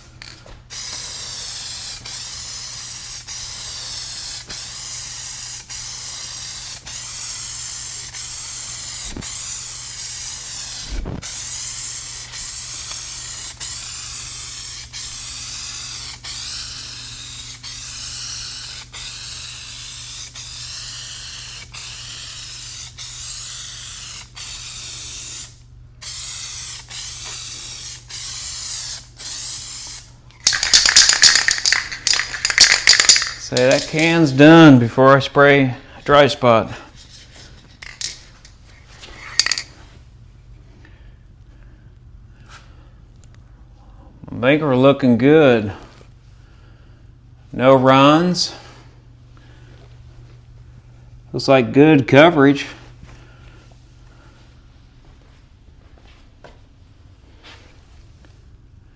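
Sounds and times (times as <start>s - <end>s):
spray paint can hissing: 0.7s - 34.2s, 37.0s - 38.5s, 39.2s - 39.7s
low steady hum: 31.5s - 58.9s.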